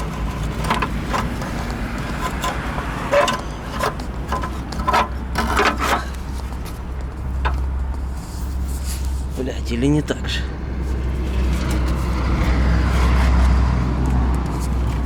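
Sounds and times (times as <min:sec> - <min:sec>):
clicks and knocks of part handling: 0:00.0 - 0:08.1.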